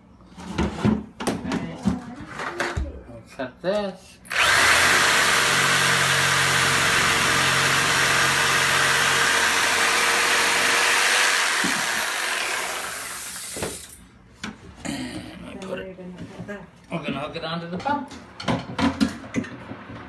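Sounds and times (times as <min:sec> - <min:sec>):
fan winding down: 0:04.3 - 0:14.0
heat gun blowing: 0:04.3 - 0:14.0.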